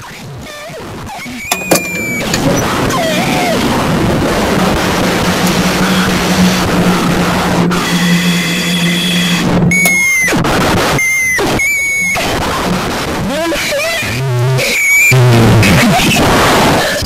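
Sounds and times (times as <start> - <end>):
high-pitched siren tone: 1.4 - 12.7
train rushing past: 1.5 - 13.1.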